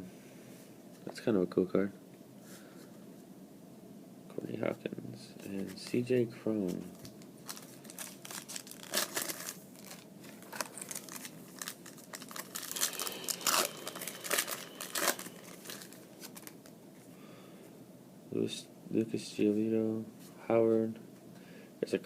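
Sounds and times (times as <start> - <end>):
wrapper crinkling and tearing: 6.9 - 16.7.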